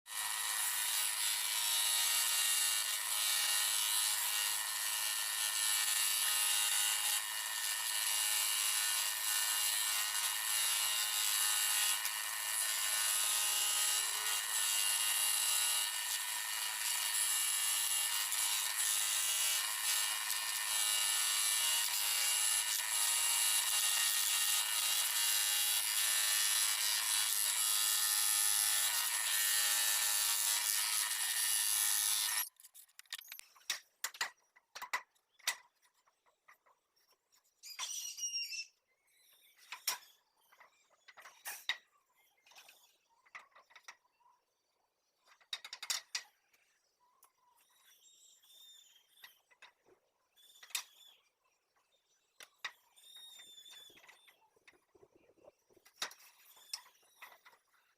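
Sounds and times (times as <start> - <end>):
scroll saw sawing wood: 0.1 - 32.5.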